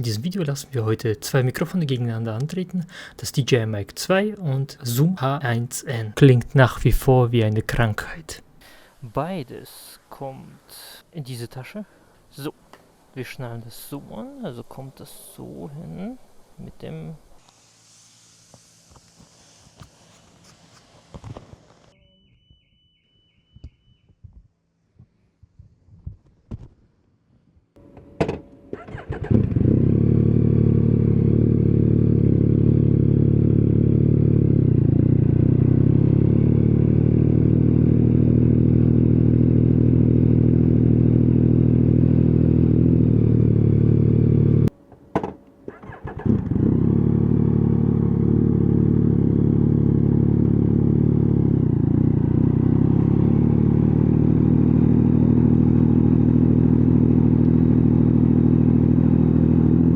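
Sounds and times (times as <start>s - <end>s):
motorcycle engine idling: 28.8s - 44.7s, 45.8s - 59.9s.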